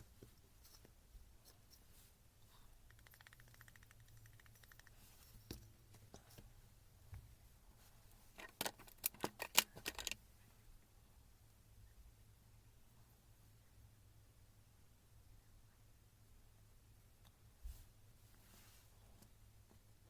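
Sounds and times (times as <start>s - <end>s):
fast even ticking: 2.8s - 5.0s
parts and tools clattering: 8.4s - 10.2s.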